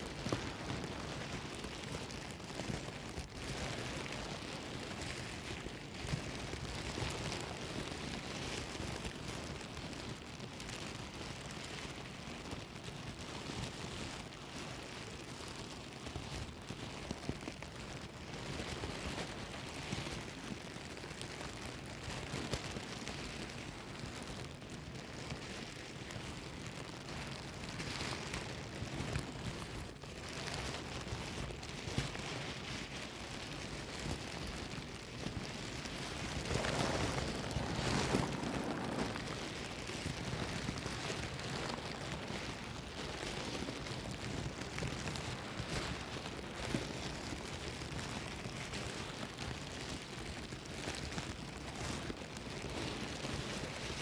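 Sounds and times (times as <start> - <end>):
plastic bag crinkling: 32.2 - 46.6.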